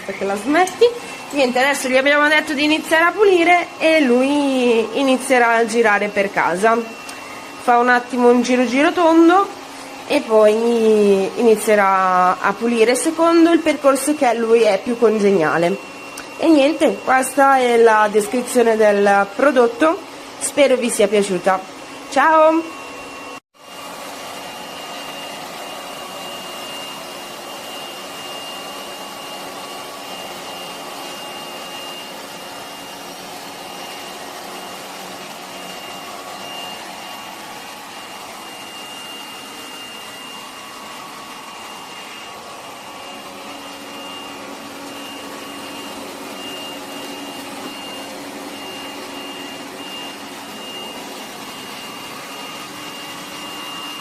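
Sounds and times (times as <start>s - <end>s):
robot vacuum whirring: 24.3s - 54.0s.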